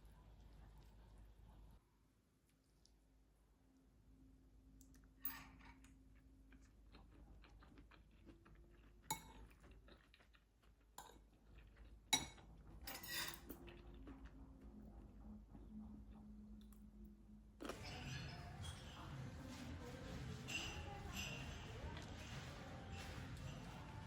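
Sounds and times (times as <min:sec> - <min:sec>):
dishes and utensils clinking: 0:12.2 - 0:13.7, 0:17.7 - 0:24.0.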